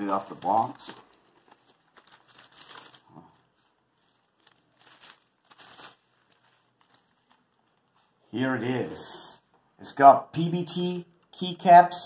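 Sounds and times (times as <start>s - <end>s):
plastic packaging crinkling: 0.0s - 8.0s.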